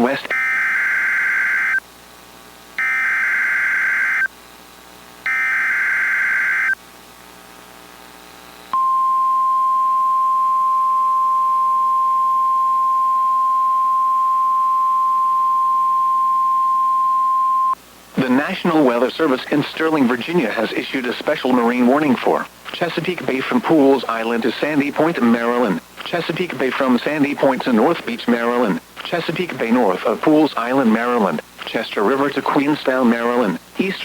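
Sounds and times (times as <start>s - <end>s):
steady alarm tone: 0.3s - 1.8s, 2.8s - 4.3s, 5.2s - 6.8s, 8.8s - 17.8s
harsh warbling data bursts: 5.3s - 6.8s.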